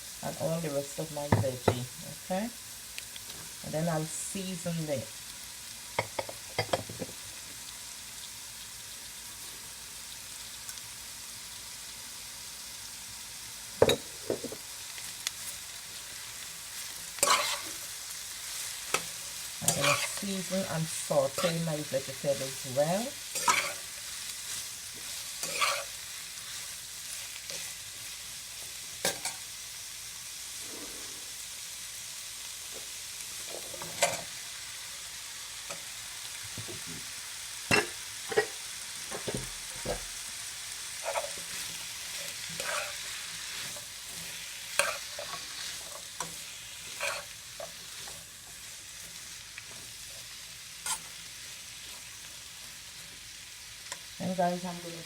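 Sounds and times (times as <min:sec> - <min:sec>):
vegetables sizzling in a wok: 0:00.0 - 0:55.0
utensil scraping a pan: 0:17.2 - 0:17.8, 0:18.6 - 0:26.0, 0:41.0 - 0:50.2.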